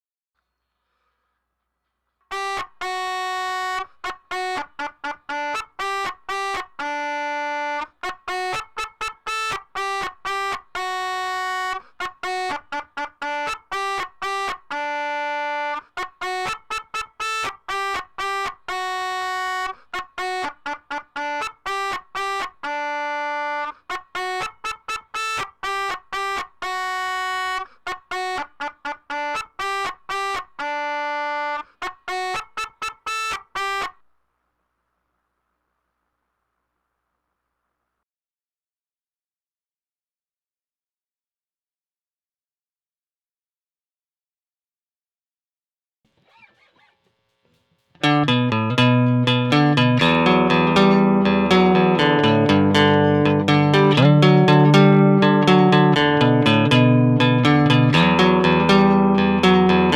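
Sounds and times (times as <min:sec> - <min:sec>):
melodica playing short reedy notes: 0:02.3 - 0:34.0, 0:48.0 - 0:59.9.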